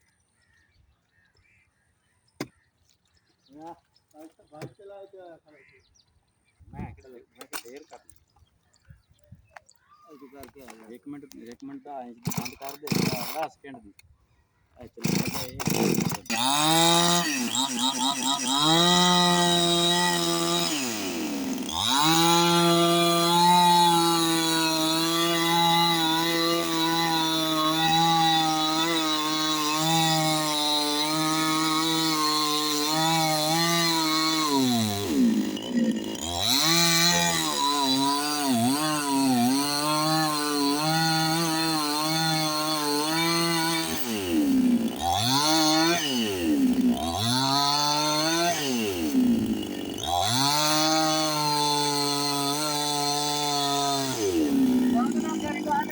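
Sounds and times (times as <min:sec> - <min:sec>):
chainsaw cutting wood: 0:12.1 - 0:13.7, 0:14.9 - 0:55.9.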